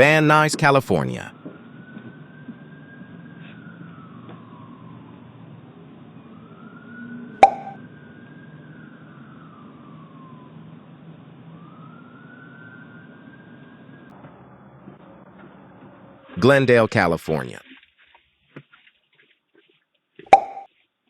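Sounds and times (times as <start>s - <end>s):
emergency siren wailing: 0.0s - 15.3s.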